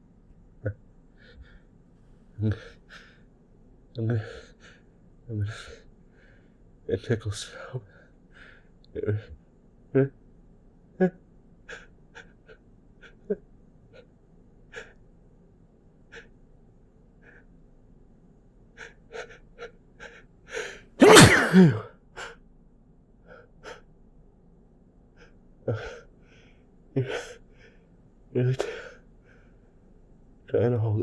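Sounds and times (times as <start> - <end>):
gasping breaths: 21.0 - 21.8
man sneezing: 21.0 - 21.8
man's catching in-breaths: 21.0 - 21.8.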